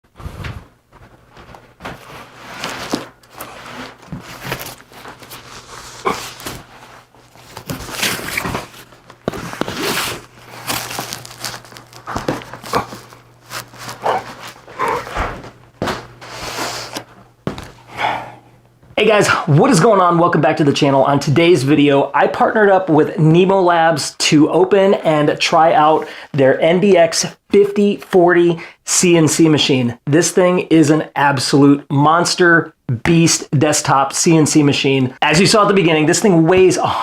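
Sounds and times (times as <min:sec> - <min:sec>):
footsteps: 0:00.1 - 0:17.9
crinkling and scraping of box: 0:01.3 - 0:17.1.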